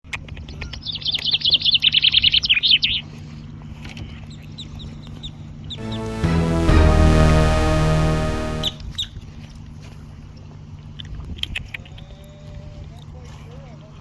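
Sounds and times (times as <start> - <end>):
music with sustained notes: 5.8 - 8.9.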